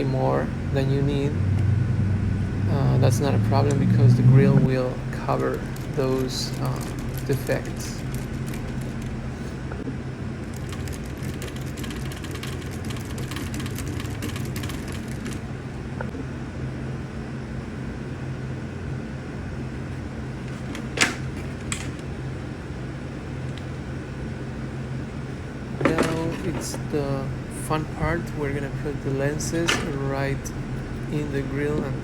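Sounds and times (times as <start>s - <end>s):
low mechanical hum: 0.0s - 32.0s
rapid light clicking and tapping: 5.2s - 9.8s, 10.4s - 15.4s.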